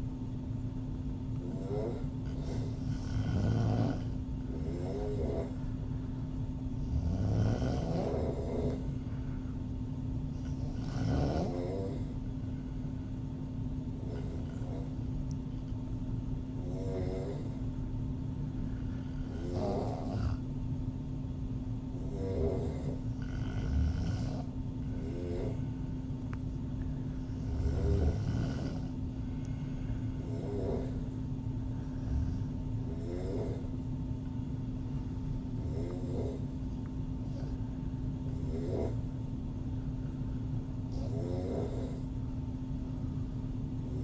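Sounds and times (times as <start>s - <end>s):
steady low hum: 0.0s - 44.0s
woman snoring: 1.4s - 5.7s, 6.8s - 9.2s, 10.3s - 12.3s, 13.9s - 15.0s, 16.6s - 17.7s, 18.6s - 20.4s, 22.0s - 25.8s, 27.2s - 31.0s, 31.7s - 33.7s, 35.6s - 36.5s, 38.3s - 39.1s, 40.9s - 42.1s.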